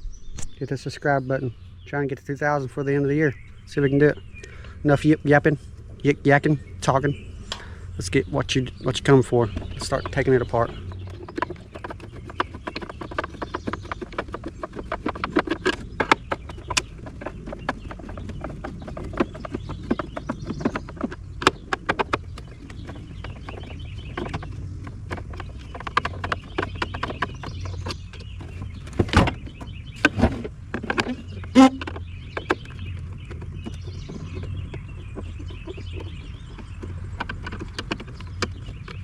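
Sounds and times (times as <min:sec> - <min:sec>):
plastic juicer clicks and knocks: 0:08.8 - 0:39.0.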